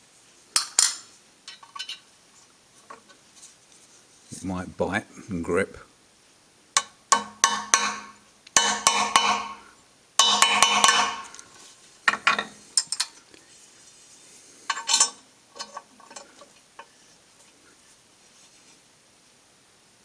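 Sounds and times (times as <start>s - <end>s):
hammer tapping metal: 6.8s - 11.4s.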